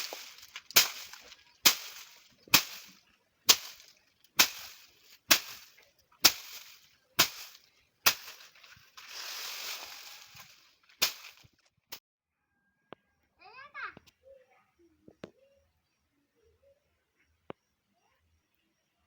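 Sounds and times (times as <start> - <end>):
sharp strikes: 0.0 - 11.4
rustling scraping noise: 0.0 - 11.7.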